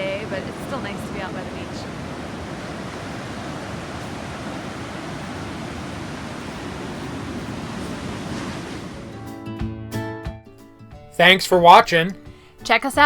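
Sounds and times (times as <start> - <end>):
ocean surf on pebble beach: 0.0 - 9.3.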